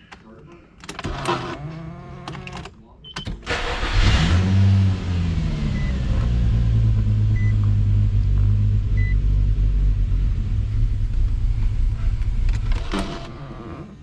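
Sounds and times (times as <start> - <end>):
car engine idling: 3.5 - 13.4.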